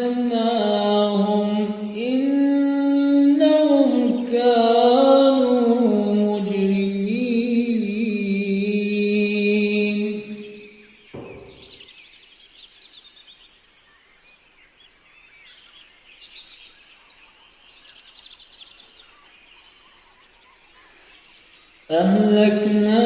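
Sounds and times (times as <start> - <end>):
small birds twittering: 0.0 - 8.1, 8.8 - 23.0
soft low thud: 11.1 - 11.8.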